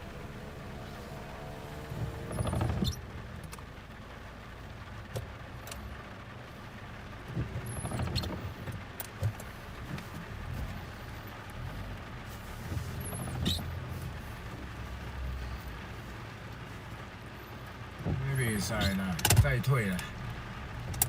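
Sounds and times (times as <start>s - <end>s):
off-road vehicle engine running: 0.0s - 21.0s
vehicle body knocks and rattles: 7.3s - 10.2s.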